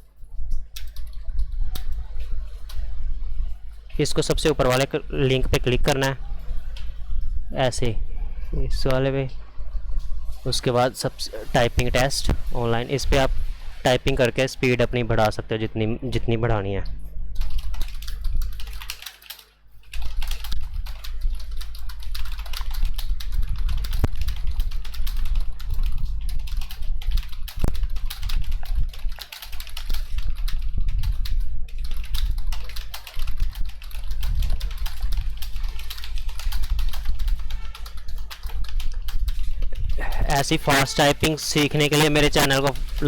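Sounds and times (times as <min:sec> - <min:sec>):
steady low hum: 0:00.0 - 0:43.0
fast typing on keyboard: 0:00.6 - 0:03.0, 0:03.9 - 0:06.8, 0:13.9 - 0:15.4, 0:17.4 - 0:43.0.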